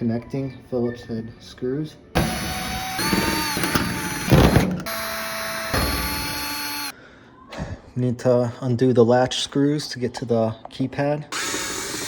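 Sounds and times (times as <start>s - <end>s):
power drill motor whining: 2.2s - 6.9s.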